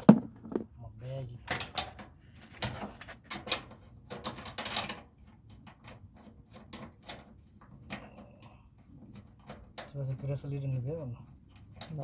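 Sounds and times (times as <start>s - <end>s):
small parts and tools handled: 0.0s - 0.7s.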